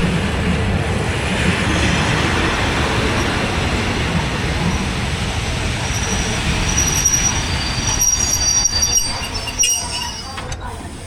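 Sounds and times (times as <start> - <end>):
train rumbling on rails: 0.0 - 11.0
metallic wheel squeal: 5.9 - 10.5.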